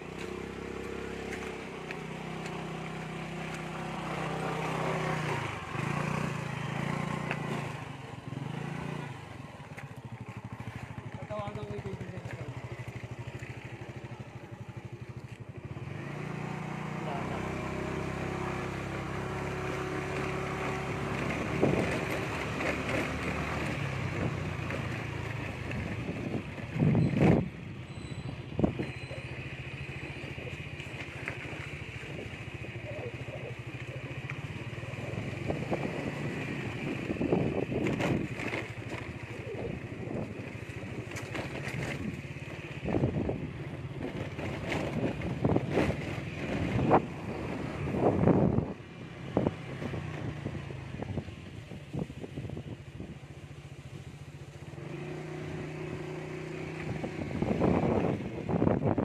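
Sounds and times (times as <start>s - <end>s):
small engine running: 0.0s - 51.2s
wind buffeting microphone: 35.1s - 38.5s, 41.8s - 53.2s, 56.8s - 59.0s.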